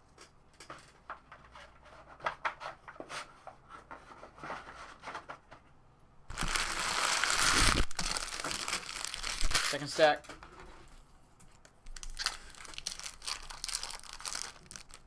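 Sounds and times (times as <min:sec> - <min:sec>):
foil wrapper crinkling: 0:06.3 - 0:10.1, 0:11.6 - 0:15.0.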